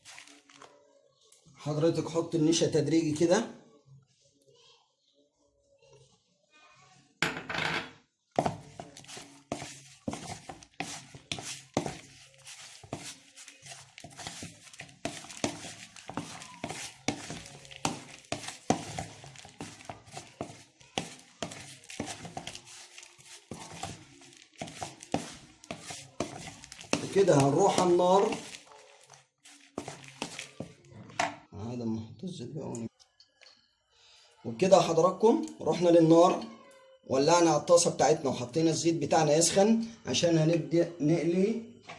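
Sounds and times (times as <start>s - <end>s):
chicken mixed in a bowl: 0.0s - 3.4s, 8.4s - 31.8s.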